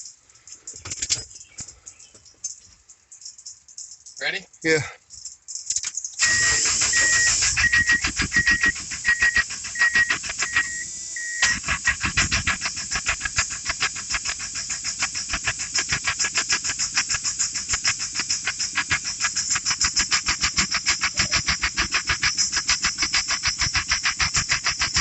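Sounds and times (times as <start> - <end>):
high beeps: 6.2 - 11.7
car engine cranking: 6.2 - 25.0.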